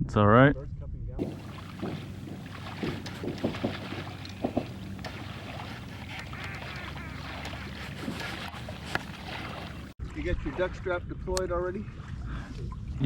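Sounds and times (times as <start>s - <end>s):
duck quacking: 5.1s - 8.5s.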